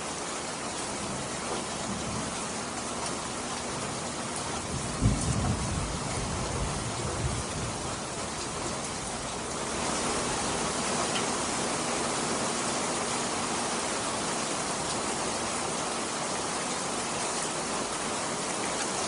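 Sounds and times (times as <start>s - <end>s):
steady rain falling: 0.0s - 19.0s
thunder clap rumbling: 4.5s - 9.4s.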